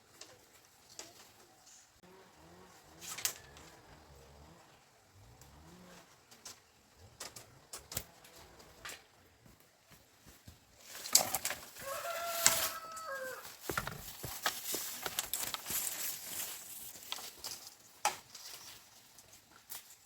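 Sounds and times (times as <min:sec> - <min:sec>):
rooster crowing: 0:11.7 - 0:13.6.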